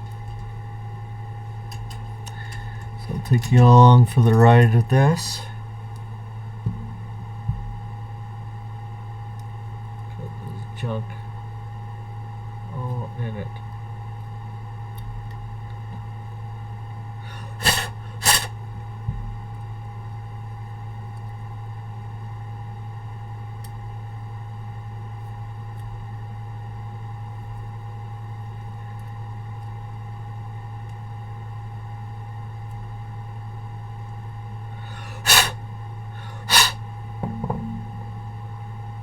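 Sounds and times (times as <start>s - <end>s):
steady electrical hum: 0.0s - 39.0s
puffs of air: 17.2s - 18.5s, 34.8s - 35.6s, 36.2s - 36.8s.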